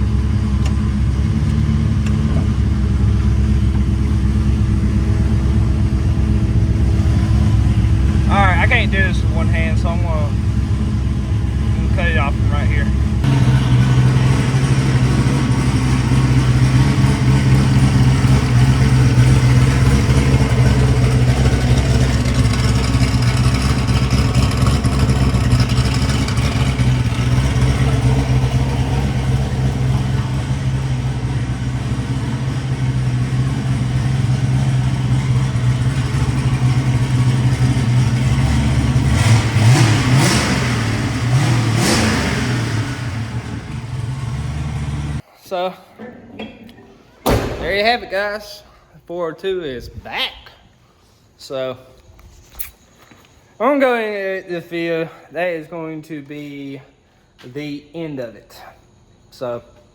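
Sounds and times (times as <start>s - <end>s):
car engine idling and revving: 0.0s - 45.2s.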